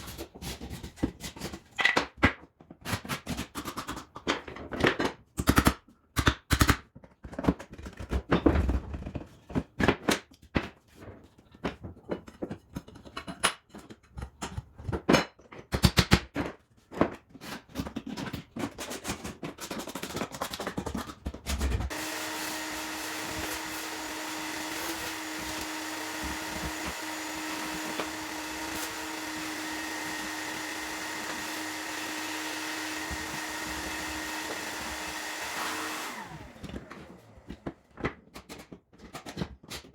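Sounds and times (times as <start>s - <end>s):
electric power tool humming: 21.9s - 37.7s.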